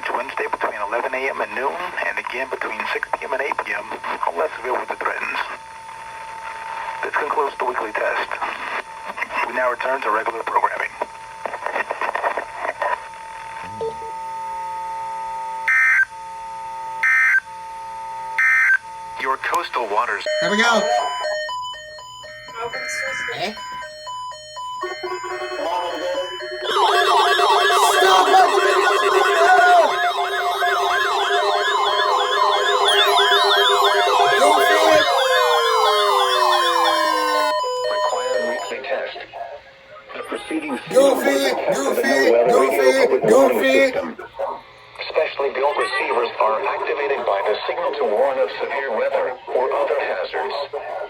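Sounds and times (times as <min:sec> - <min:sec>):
buzzy digital data tones: 0:20.3 - 0:38.7
yelping siren: 0:20.3 - 0:38.8, 0:40.8 - 0:44.2.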